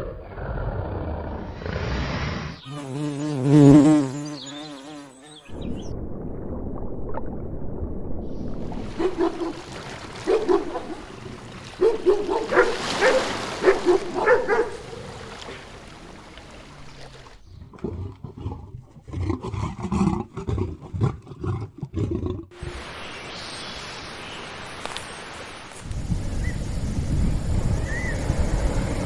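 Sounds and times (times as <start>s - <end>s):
animal barking calls: 8.7s - 22.6s
low rough grunting calls: 8.7s - 22.6s.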